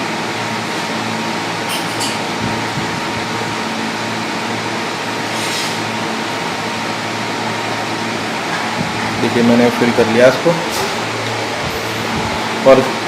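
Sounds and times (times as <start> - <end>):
mechanical hum and hiss: 0.0 - 13.0.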